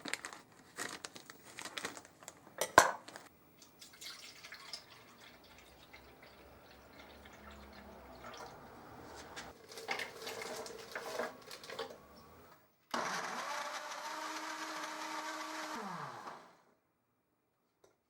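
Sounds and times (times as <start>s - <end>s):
small electric motor running: 13.0s - 16.6s.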